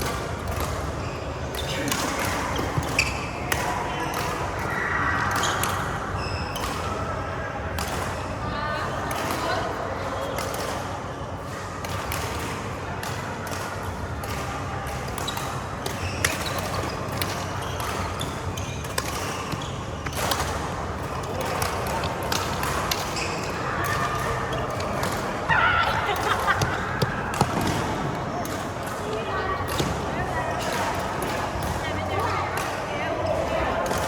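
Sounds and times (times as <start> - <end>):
rackets hitting shuttlecock: 11.8 - 34.0.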